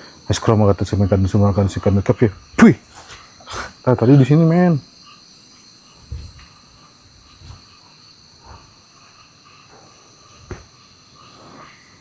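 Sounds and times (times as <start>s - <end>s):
crickets chirring: 0.0s - 12.0s
soft low thumps: 6.0s - 6.6s.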